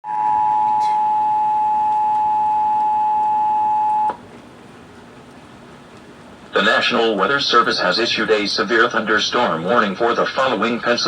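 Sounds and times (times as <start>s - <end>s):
two-tone attention signal: 0.0s - 4.2s.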